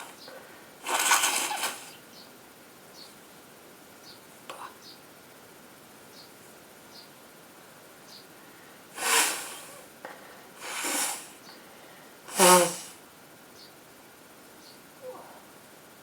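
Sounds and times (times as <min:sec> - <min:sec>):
woman sneezing: 0:09.0 - 0:09.8, 0:10.6 - 0:11.4, 0:12.3 - 0:13.0.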